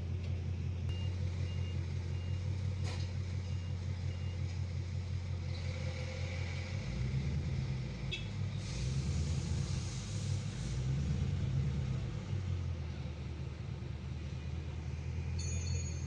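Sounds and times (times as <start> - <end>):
car engine idling unevenly: 0.0 - 5.5.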